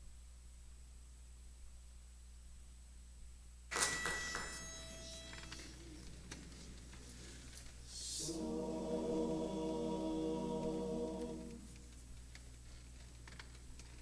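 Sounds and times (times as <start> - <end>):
chorus singing a cappella: 7.9 - 11.9.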